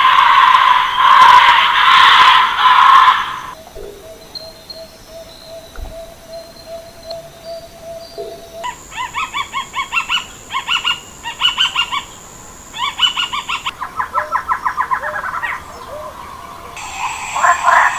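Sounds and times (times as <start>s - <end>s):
bird calling short rising notes: 16.8s - 17.9s
steady high whine: 16.8s - 17.9s.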